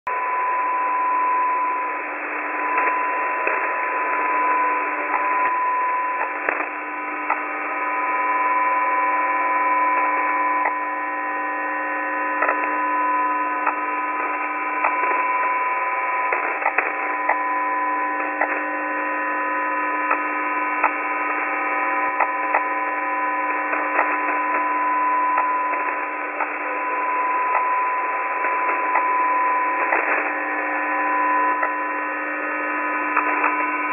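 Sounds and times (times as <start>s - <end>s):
steady hum of radio tones: 0.1s - 33.9s
irregular clicks on radio carrier: 6.2s - 7.4s, 12.4s - 12.8s, 16.3s - 17.4s, 22.2s - 22.7s, 29.8s - 30.4s.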